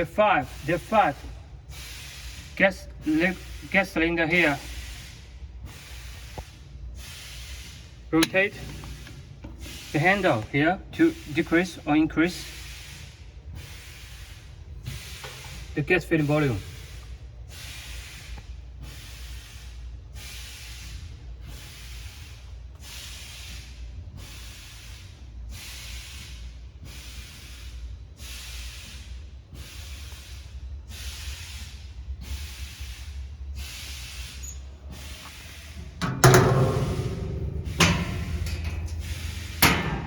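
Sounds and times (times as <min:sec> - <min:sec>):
gas hisses: 0:03.2 - 0:11.8, 0:32.6 - 0:40.0
low machine hum: 0:07.8 - 0:11.4, 0:34.4 - 0:40.0.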